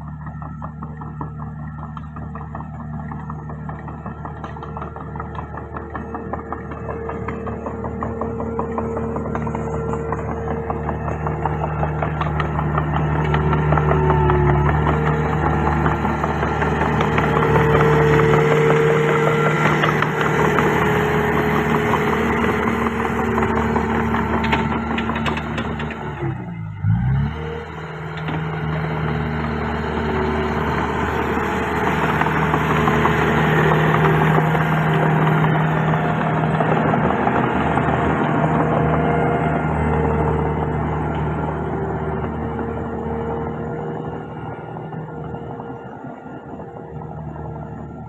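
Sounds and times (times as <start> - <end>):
bulldozer diesel engine running: 0.0 - 48.0.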